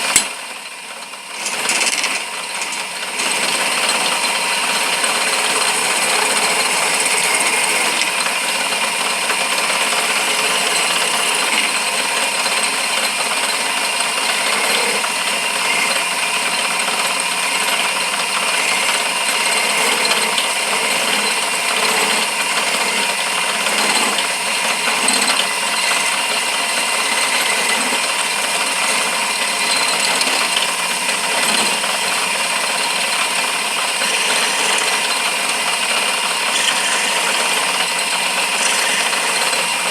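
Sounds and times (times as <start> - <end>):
lathe whining: 0.0 - 39.9
turning tool cutting wood: 0.0 - 39.9.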